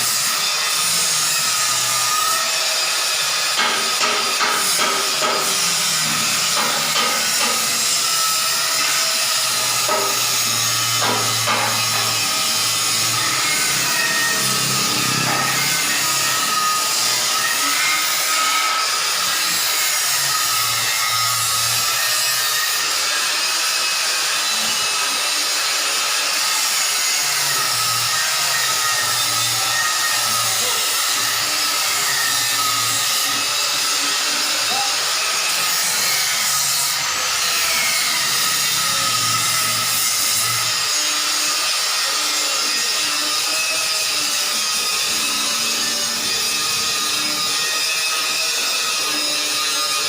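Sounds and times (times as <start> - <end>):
machinery whirring: 3.2 - 19.0.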